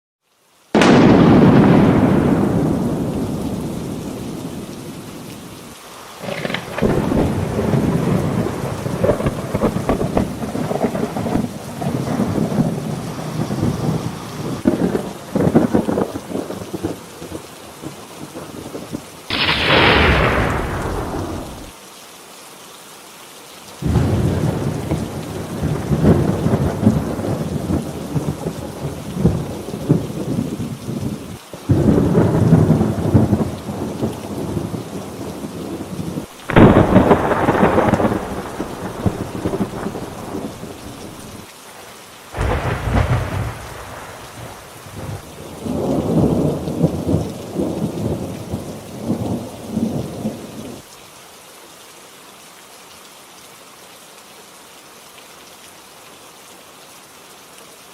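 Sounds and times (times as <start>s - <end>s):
steady rain: 0.2s - 57.9s
thunderclaps rumbling: 0.8s - 5.3s, 6.2s - 21.7s, 23.8s - 41.4s, 42.4s - 50.7s.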